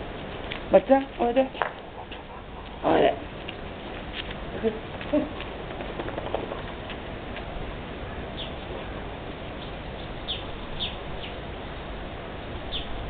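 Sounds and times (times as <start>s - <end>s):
outdoor background noise: 0.0s - 13.0s
small bird chirping: 8.4s - 8.7s, 9.6s - 11.4s.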